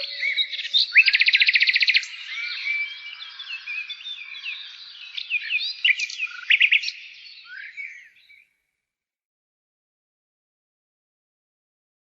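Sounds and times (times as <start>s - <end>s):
bird song chirps and whistles: 0.0s - 8.5s.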